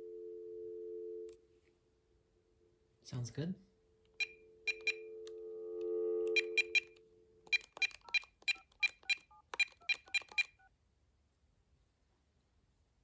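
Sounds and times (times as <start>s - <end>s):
phone dial tone: 0.0s - 1.3s, 4.2s - 10.7s
phone keypress beeps: 4.2s - 5.0s, 6.3s - 10.7s.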